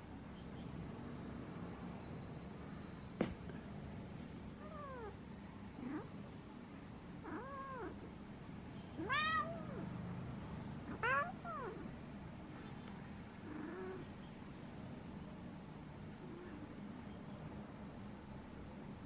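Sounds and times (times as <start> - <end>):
cat meowing: 4.6 - 5.2, 7.2 - 8.1, 9.0 - 9.9, 10.9 - 11.9, 13.5 - 14.0.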